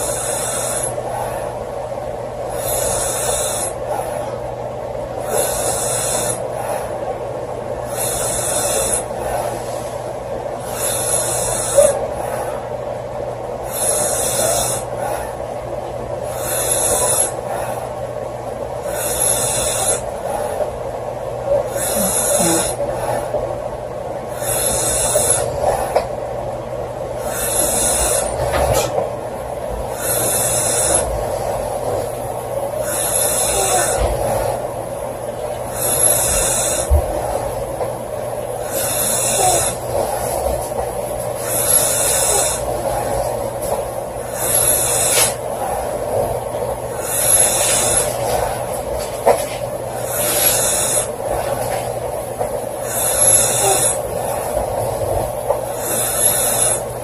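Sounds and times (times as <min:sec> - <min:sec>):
woman snoring loudly: 0:00.0 - 0:01.5, 0:02.5 - 0:04.3, 0:05.2 - 0:06.9, 0:07.9 - 0:09.6, 0:10.6 - 0:12.6, 0:13.6 - 0:15.3, 0:16.2 - 0:17.8, 0:18.8 - 0:20.7, 0:21.6 - 0:23.2, 0:24.3 - 0:26.0, 0:27.2 - 0:28.9, 0:29.9 - 0:34.8, 0:35.6 - 0:37.8, 0:38.5 - 0:49.0, 0:50.0 - 0:51.7, 0:52.8 - 0:57.0.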